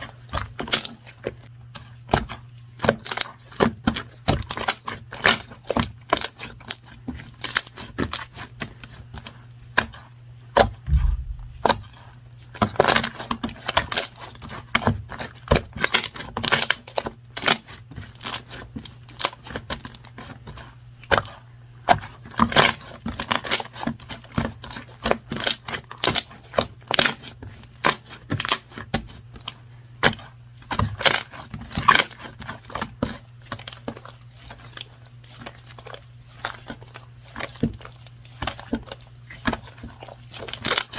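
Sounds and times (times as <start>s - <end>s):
steady low hum: 10.9s - 12.0s.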